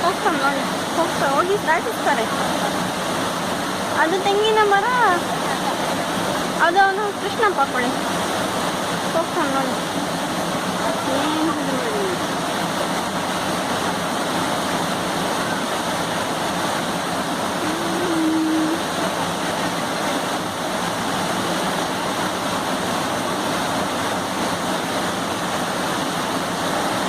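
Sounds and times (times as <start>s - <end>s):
floodwater rushing: 0.0s - 27.0s
short hum or voice: 17.6s - 18.8s.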